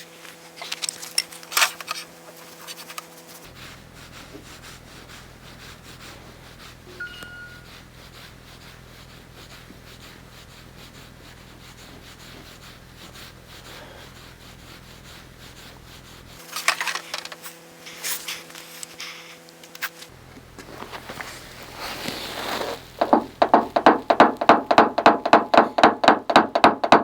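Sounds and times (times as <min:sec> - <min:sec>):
low steady hum: 0:03.5 - 0:17.0
tools rubbing and scraping metal: 0:06.8 - 0:07.9
sharp knocks on metal: 0:23.0 - 0:27.0.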